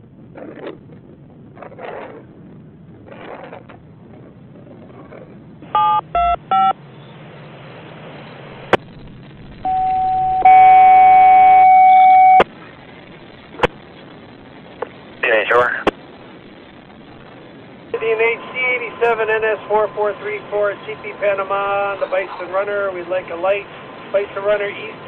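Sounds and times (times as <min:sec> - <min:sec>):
steady buzzy beep: 0:05.8 - 0:06.8, 0:09.6 - 0:12.4
touch-tone beeps: 0:05.8 - 0:06.8, 0:09.6 - 0:12.4
radio hiss: 0:12.4 - 0:25.0.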